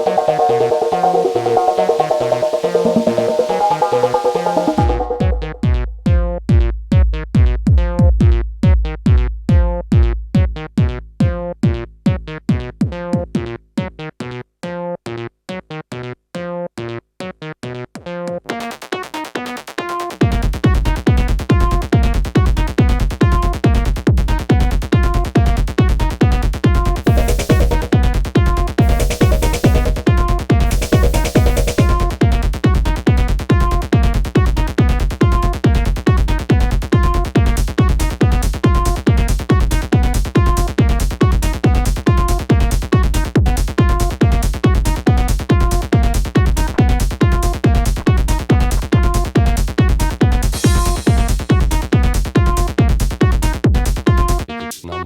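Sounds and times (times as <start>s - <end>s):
noisy synth swells: 0.0s - 5.6s
synthesizer electronic dance music: 0.0s - 5.7s, 27.1s - 32.4s, 50.6s - 51.8s
kick drum beat: 4.8s - 5.8s, 6.9s - 13.5s, 20.2s - 54.4s.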